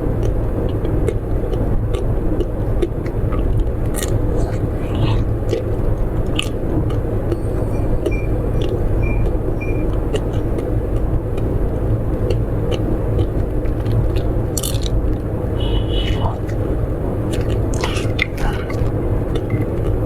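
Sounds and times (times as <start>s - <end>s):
person chewing snacks: 0.0s - 7.4s, 9.9s - 20.0s
short high beeps: 7.4s - 9.9s.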